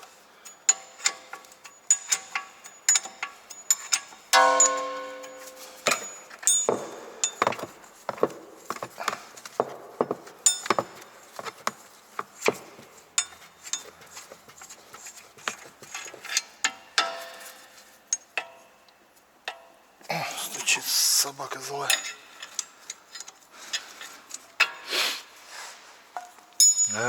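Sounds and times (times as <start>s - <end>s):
tools knocking on metal: 4.4s - 11.8s.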